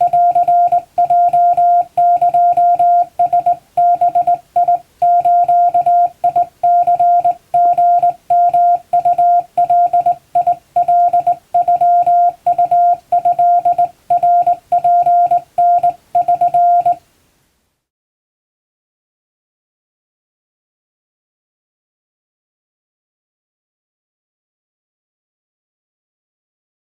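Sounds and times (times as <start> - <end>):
morse code beeps: 0.0 - 17.0.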